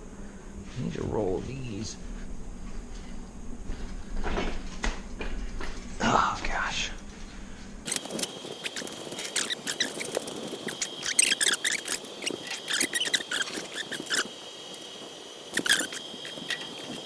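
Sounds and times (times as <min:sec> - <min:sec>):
engine hoist casters squeaking: 0:07.8 - 0:17.0.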